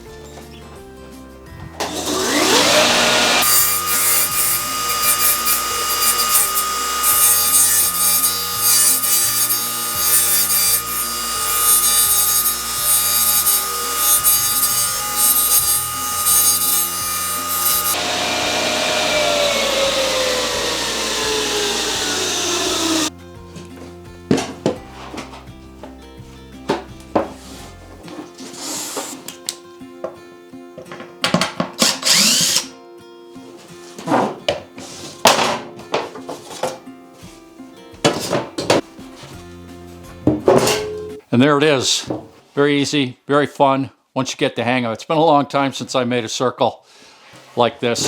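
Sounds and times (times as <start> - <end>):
saw blade cutting wood: 1.8 - 23.1, 28.4 - 29.4, 31.8 - 32.7
table saw whining: 1.8 - 23.1, 31.8 - 32.7.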